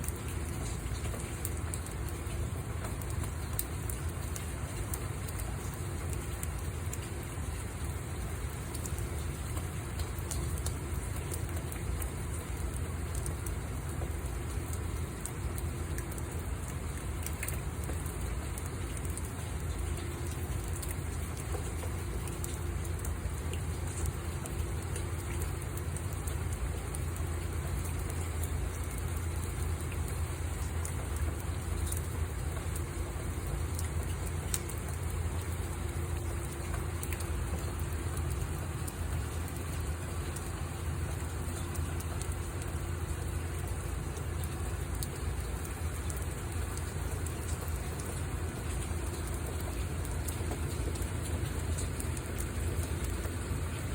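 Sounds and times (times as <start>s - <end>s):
rain falling: 0.0s - 53.9s.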